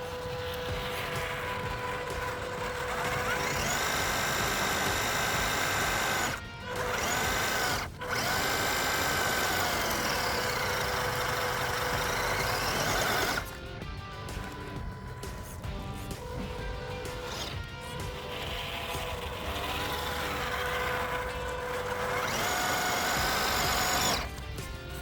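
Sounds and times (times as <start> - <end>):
background music: 0.0 - 25.0
small electric motor whining: 0.0 - 25.0.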